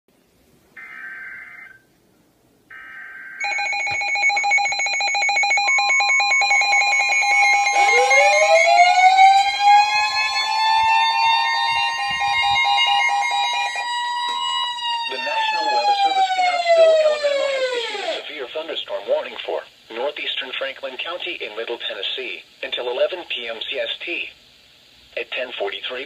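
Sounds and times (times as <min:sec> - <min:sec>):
siren winding up: 0:03.4 - 0:18.3
steady tone: 0:05.6 - 0:18.3.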